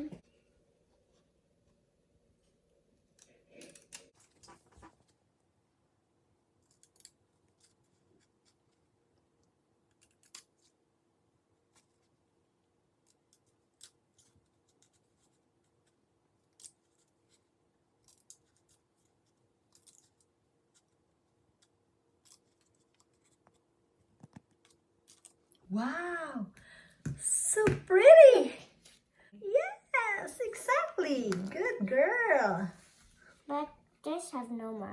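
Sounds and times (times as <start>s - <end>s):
scissors snipping paper: 9.9s - 10.8s, 18.0s - 23.6s.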